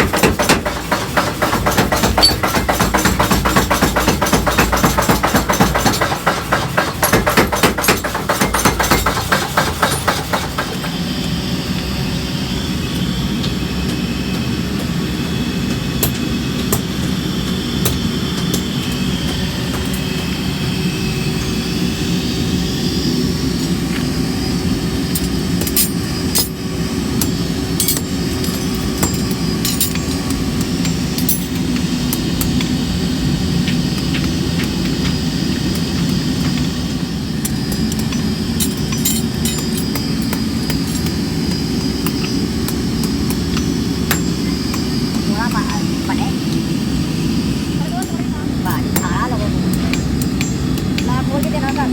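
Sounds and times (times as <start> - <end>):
hammer strikes on metal: 0.0 - 11.0
machine running: 0.0 - 51.9
sharp metallic clinks: 37.4 - 41.3.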